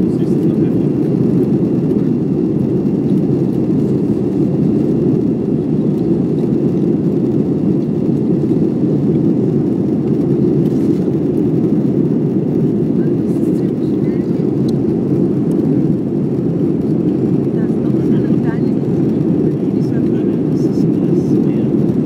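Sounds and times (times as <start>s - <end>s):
jet engine noise inside cabin: 0.0s - 22.0s.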